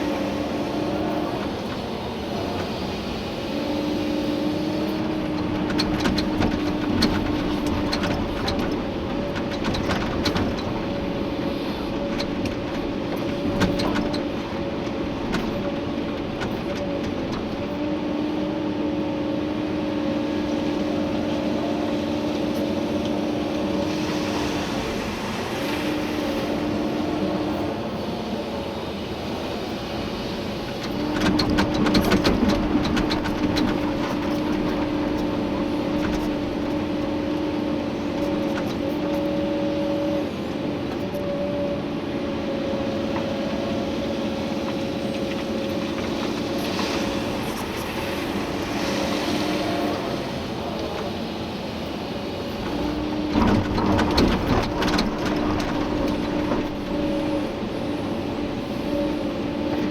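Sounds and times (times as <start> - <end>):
excavator engine and hydraulics: 0.0 - 59.9.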